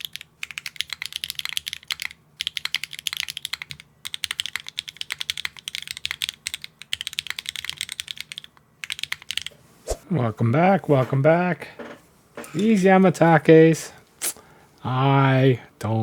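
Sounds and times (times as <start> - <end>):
mechanical keyboard typing: 0.0 - 9.5.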